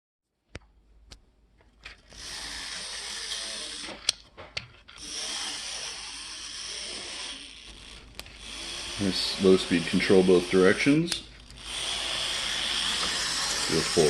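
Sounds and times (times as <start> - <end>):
model train motor whirring: 1.9 - 4.2, 5.0 - 14.0.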